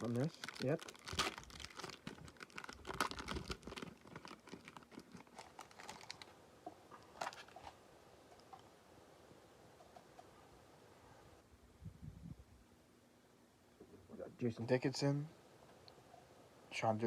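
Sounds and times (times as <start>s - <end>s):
foil wrapper crinkling: 0.0s - 7.8s.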